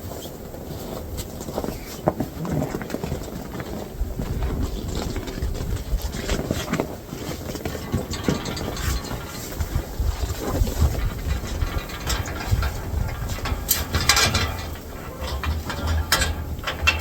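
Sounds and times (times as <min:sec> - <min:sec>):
footsteps crunching through snow: 0:00.0 - 0:08.2
wind buffeting microphone: 0:00.5 - 0:17.0.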